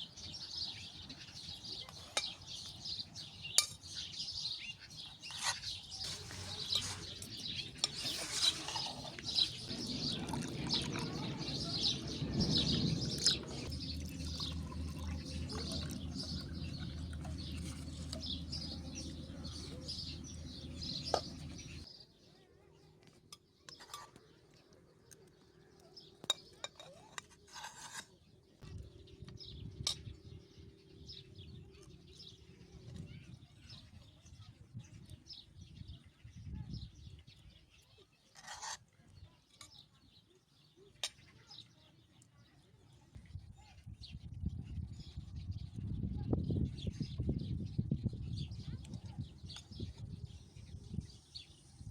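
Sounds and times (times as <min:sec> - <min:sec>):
small birds chirping: 0:00.0 - 0:51.9
low rumble: 0:09.6 - 0:21.8.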